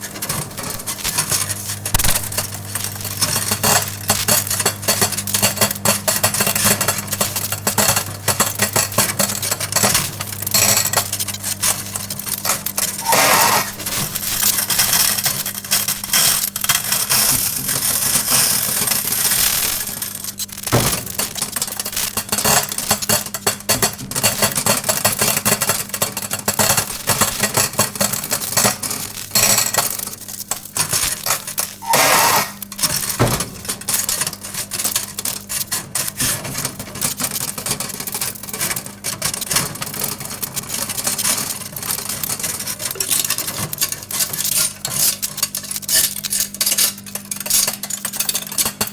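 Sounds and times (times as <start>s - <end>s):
sparks crackling and snapping: 0.0s - 6.1s, 6.9s - 23.2s, 29.0s - 35.7s
microwave oven humming: 0.0s - 48.9s.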